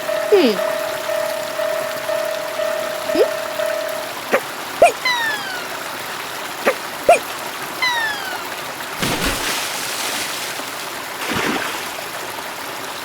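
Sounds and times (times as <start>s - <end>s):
water running: 0.0s - 12.3s
water splashes: 0.0s - 13.0s
falling whistle glides: 4.9s - 5.7s, 7.8s - 8.4s.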